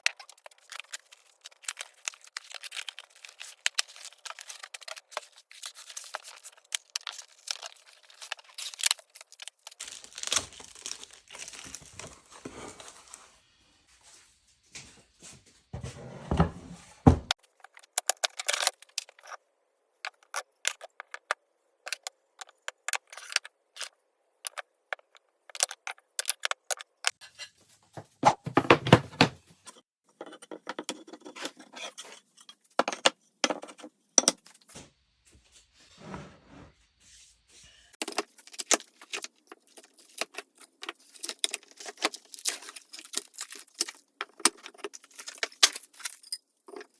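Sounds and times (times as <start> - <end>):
wood pieces clacking together: 28.2 - 29.4.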